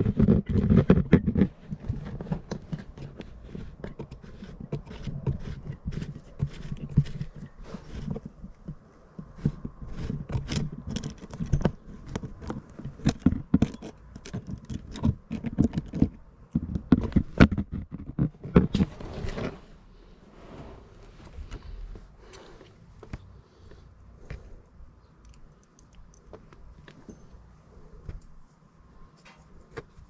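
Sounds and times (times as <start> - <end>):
hands handling small hard parts: 0.0 - 19.6, 21.1 - 28.4
short scrape: 18.7 - 21.8.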